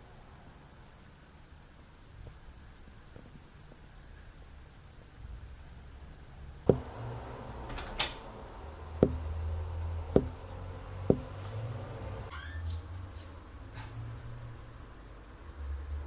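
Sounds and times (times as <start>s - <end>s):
hollow wooden knocks: 6.7s - 7.2s, 8.8s - 12.2s
plywood scraping: 6.7s - 12.3s.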